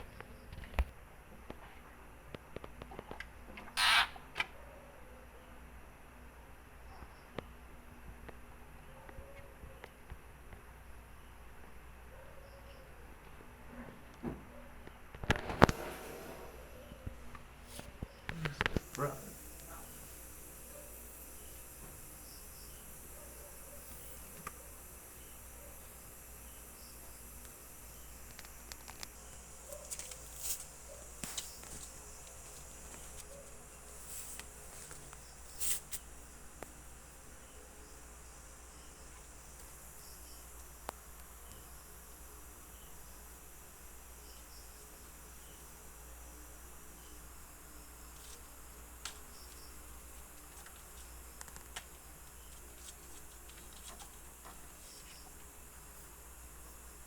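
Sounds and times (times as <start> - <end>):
low steady hiss: 5.0 - 57.0
night insects chirring: 15.2 - 57.0.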